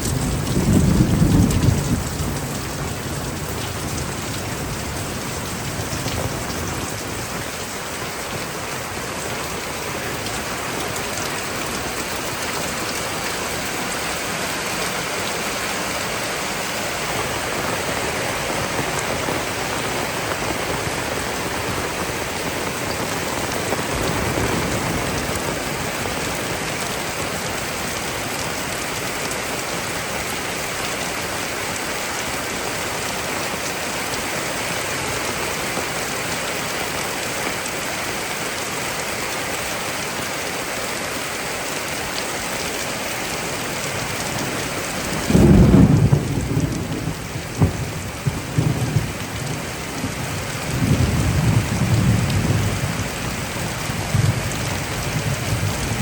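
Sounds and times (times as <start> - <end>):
thunder rumbling: 0.0 - 27.2, 43.9 - 56.0
heavy rain pouring: 0.0 - 56.0.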